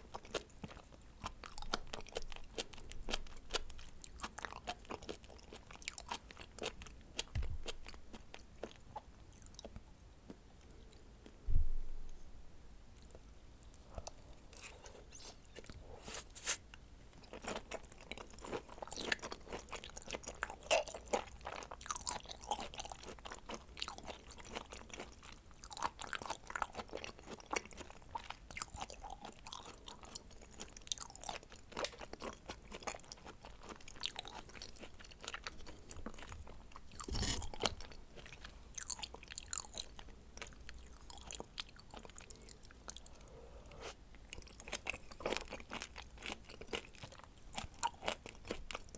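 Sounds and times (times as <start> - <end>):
thump: 11.5 - 11.9.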